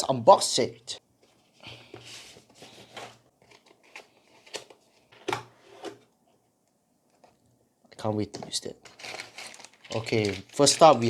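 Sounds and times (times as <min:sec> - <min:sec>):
packaging scraping and rustling: 0:08.8 - 0:11.0.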